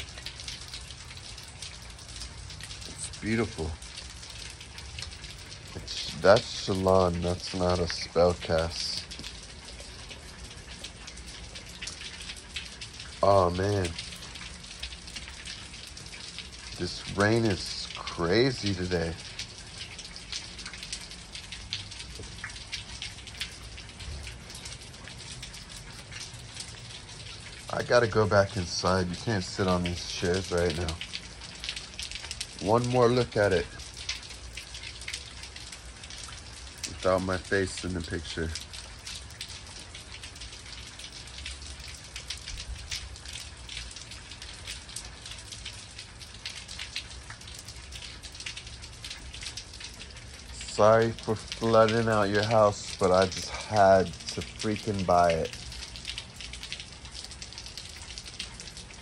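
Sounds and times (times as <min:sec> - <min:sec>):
heavy rain falling: 0:00.0 - 0:59.0
heavy rain hissing: 0:02.5 - 0:03.8, 0:04.8 - 0:10.2, 0:13.2 - 0:15.2, 0:16.4 - 0:19.4, 0:50.0 - 0:56.4.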